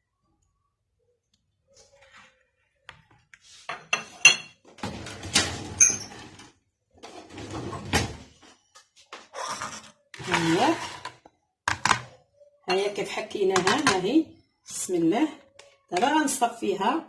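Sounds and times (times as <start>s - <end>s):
dishes clinking: 3.7s - 4.6s
spoon scraping bowl: 9.4s - 11.2s.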